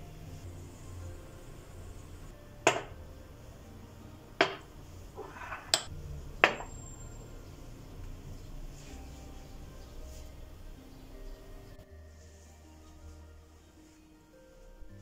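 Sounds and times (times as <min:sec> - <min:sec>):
soft rustle: 0:07.9 - 0:15.0.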